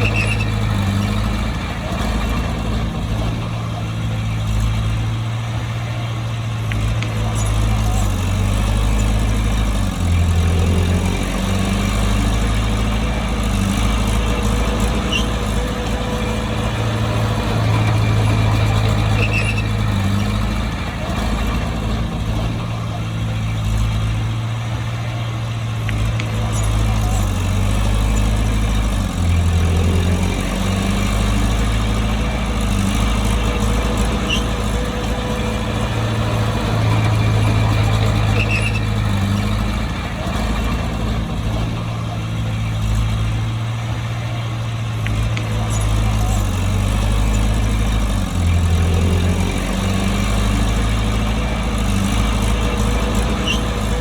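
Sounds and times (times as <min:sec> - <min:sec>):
faint short squeaks: 0:00.0 - 0:02.5, 0:13.0 - 0:21.6, 0:26.4 - 0:27.2, 0:31.6 - 0:39.7, 0:51.7 - 0:54.0
bulldozer diesel engine: 0:00.0 - 0:54.0.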